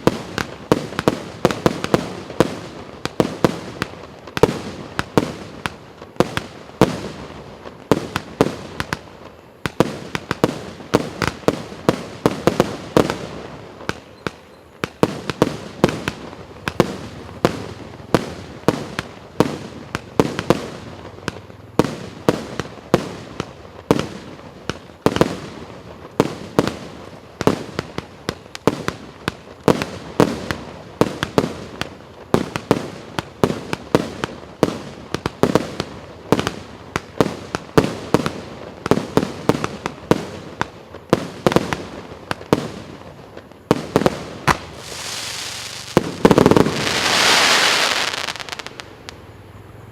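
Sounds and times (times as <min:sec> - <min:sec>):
fireworks bangs: 0:00.0 - 0:49.9.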